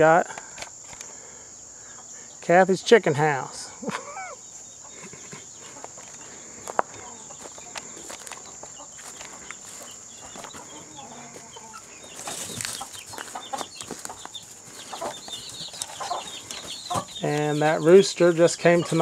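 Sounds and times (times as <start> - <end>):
chicks peeping: 0.7 - 2.4, 4.0 - 19.0
hens clucking: 3.7 - 19.0.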